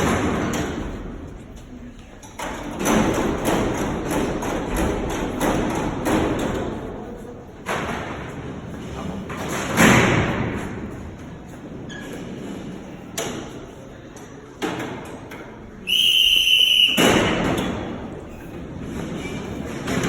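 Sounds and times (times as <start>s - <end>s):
doors slamming with a crash: 7.6s - 10.9s, 16.9s - 20.0s
steel cell doors clanking: 16.7s - 20.0s.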